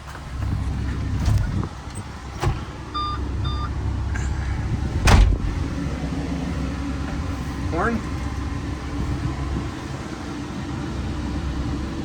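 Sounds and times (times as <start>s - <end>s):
diesel engine idling: 0.0s - 12.0s
short beeps: 3.0s - 3.7s
loud thump: 5.0s - 5.7s.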